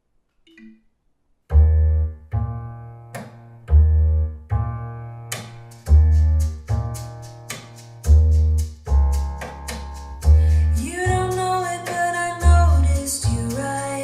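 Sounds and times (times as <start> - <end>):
instrumental music: 0.4 - 14.0
deep bass notes: 1.5 - 14.0.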